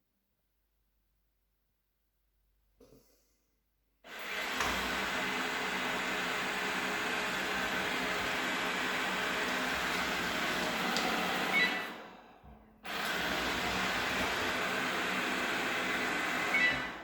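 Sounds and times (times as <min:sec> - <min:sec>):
robot vacuum cleaner whirring: 0:04.1 - 0:17.0.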